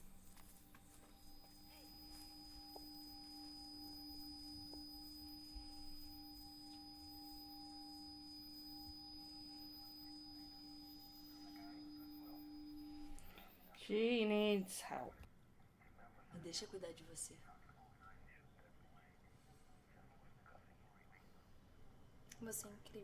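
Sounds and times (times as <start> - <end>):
soft sustained drone: 0.0 - 15.1.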